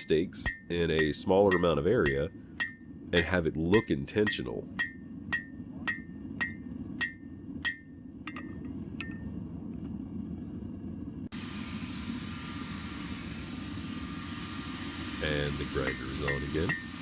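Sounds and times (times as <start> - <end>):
hammer striking steel on anvil: 0.0 - 9.3, 15.8 - 17.0.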